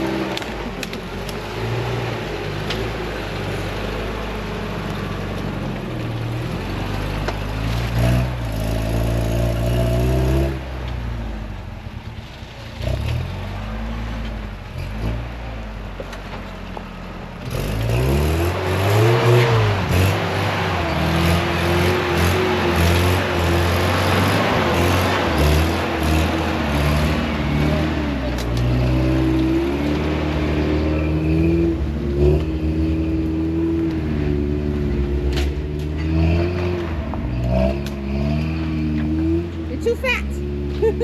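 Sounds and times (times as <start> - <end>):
engine revving: 6.2 - 11.5, 12.7 - 15.5, 17.4 - 41.0.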